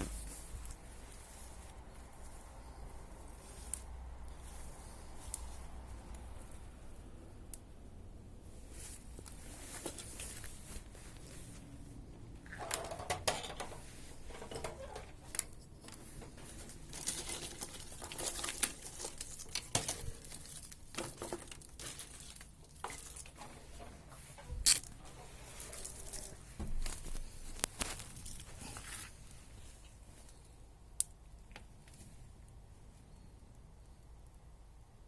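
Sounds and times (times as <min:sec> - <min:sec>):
debris crumpling and tearing: 0:14.2 - 0:30.4.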